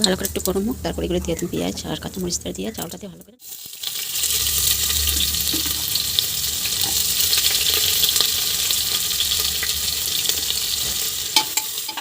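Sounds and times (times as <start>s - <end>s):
hot oil sizzling and crackling: 2.5s - 12.0s.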